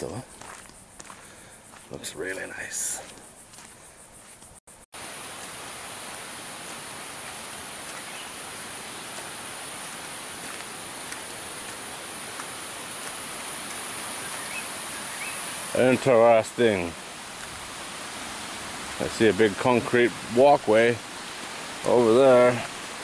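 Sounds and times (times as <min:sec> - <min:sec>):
water rushing: 0:05.0 - 0:23.0.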